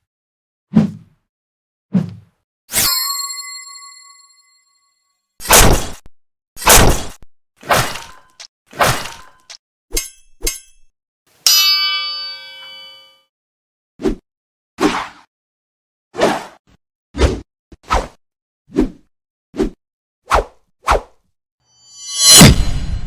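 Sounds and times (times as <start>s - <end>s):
metal blade ringing: 2.7s - 4.2s, 8.9s - 10.9s, 11.5s - 13.2s, 21.9s - 23.0s
short sharp hits: 22.1s - 23.0s.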